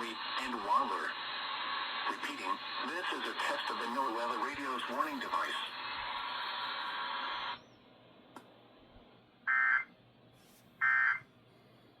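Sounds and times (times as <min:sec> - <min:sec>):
weather radio alarm tone: 0:09.5 - 0:09.9, 0:10.8 - 0:11.2.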